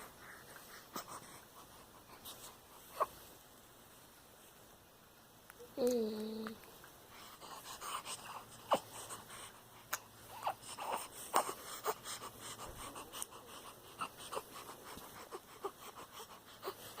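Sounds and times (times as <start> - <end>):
baby snuffly breathing: 0.0 - 3.3, 7.1 - 17.0.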